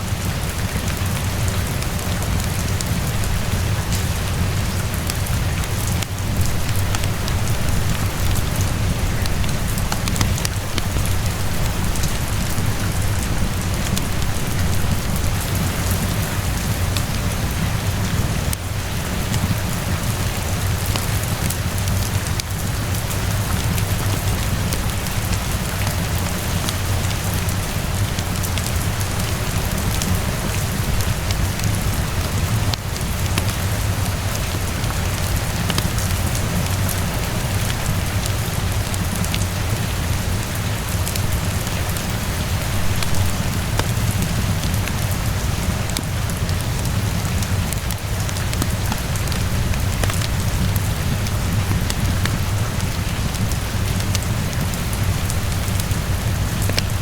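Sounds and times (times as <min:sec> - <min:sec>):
heavy rain: 0:00.0 - 0:57.0
wood fire crackling: 0:00.1 - 0:57.0.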